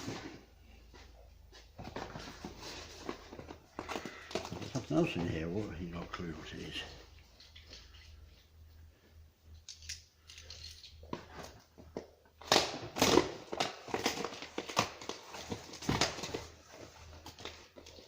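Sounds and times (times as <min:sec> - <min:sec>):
packaging rustling and crinkling: 0:00.0 - 0:08.3, 0:10.2 - 0:18.0.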